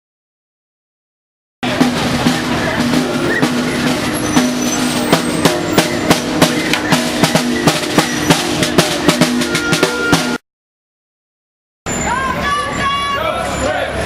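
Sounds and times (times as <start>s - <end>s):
fast irregular drumbeats: 1.6s - 10.4s
street traffic: 1.6s - 10.4s, 11.8s - 14.0s
long low honking tones: 2.8s - 10.4s.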